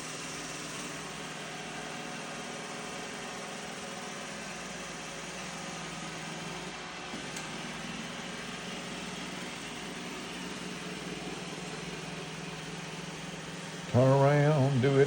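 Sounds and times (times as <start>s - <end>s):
robot vacuum motor whirring: 4.9s - 14.1s.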